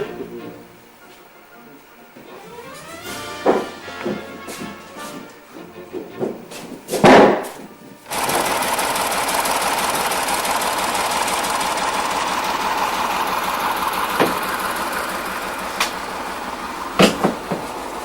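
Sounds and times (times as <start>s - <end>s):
mechanical running noise: 8.0s - 18.0s.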